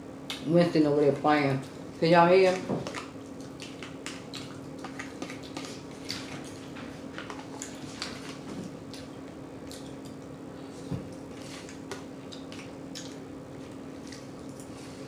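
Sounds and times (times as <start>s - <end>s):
steady low hum: 0.0s - 15.0s
chewing and lip smacking: 2.8s - 10.3s, 11.1s - 14.8s.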